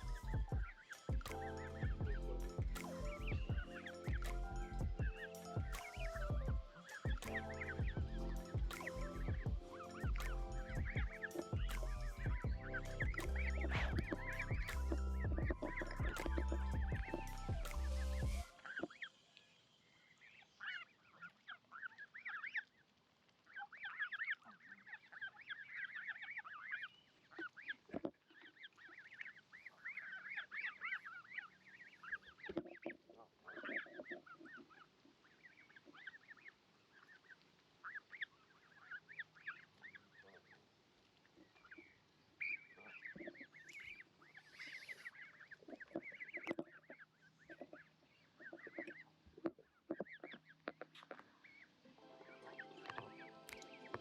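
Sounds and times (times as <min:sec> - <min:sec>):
geese honking: 0:51.5 - 0:54.0.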